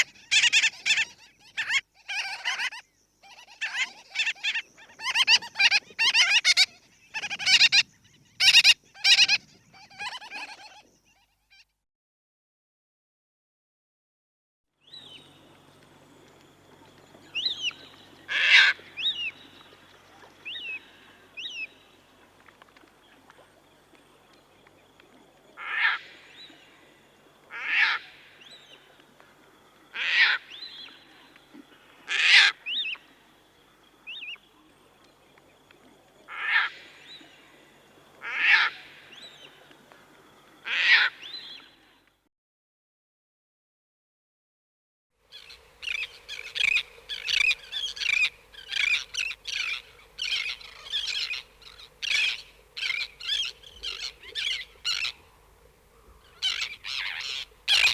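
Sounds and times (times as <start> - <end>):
harsh bird calls: 17.3 - 19.6, 45.3 - 57.9
high bird chirps: 45.4 - 55.2, 56.3 - 57.9.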